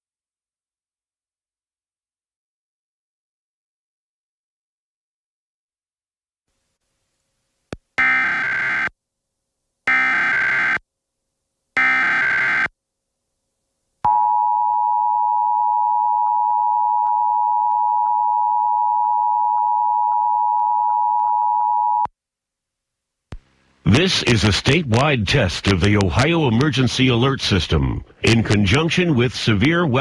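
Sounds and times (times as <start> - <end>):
screeching data tones: 8.0 - 8.9, 9.9 - 10.8.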